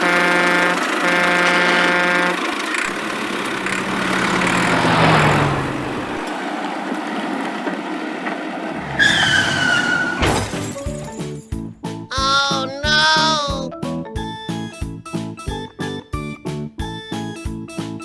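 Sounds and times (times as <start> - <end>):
cartoon toy vehicle engine: 0.0 - 6.3, 12.1 - 13.7.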